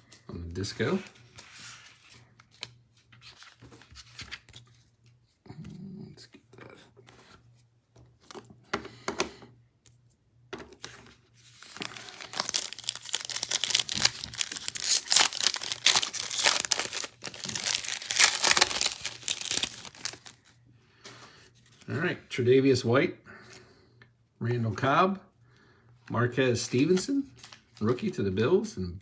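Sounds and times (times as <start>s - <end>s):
plastic wrapper crinkling: 11.5s - 20.5s.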